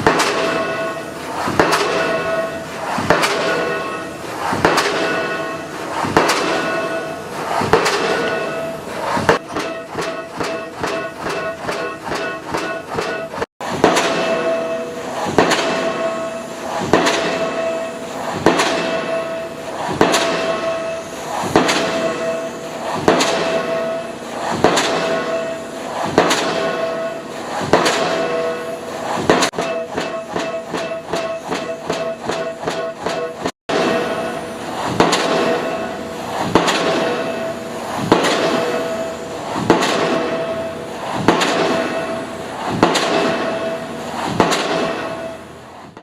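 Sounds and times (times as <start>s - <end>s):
pile-driving hammer ringing blows: 0.0s - 46.0s.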